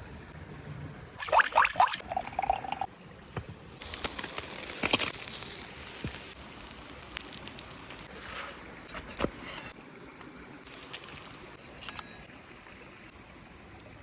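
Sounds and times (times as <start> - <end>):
liquid pouring and splashing: 1.2 - 2.9.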